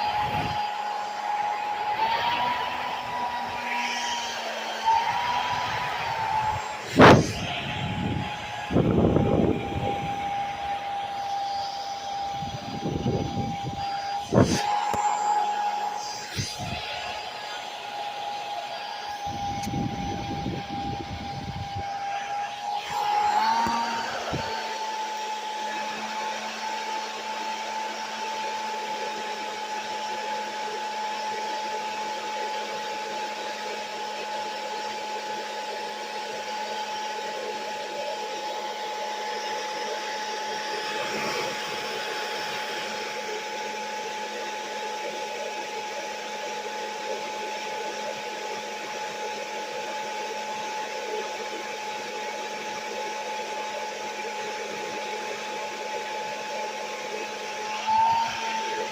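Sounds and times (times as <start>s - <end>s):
small appliance motor whining: 0.0s - 58.9s
rushing air: 1.5s - 17.8s.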